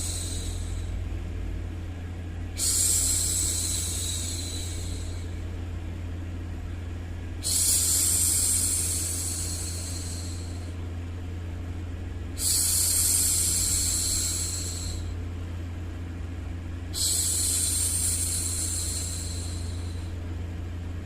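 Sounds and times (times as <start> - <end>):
low white noise hum: 0.0 - 21.0
woman shushing: 2.6 - 5.3, 17.0 - 20.1.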